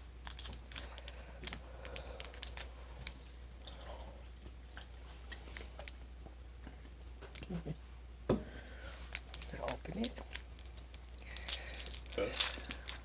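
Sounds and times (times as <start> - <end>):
plastic candy wrapper crinkling: 0.2 - 3.2.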